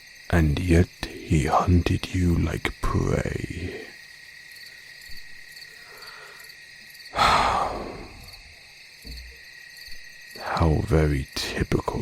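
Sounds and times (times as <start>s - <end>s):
crickets chirping: 0.0s - 12.0s
person exhaling breathily: 7.2s - 8.5s.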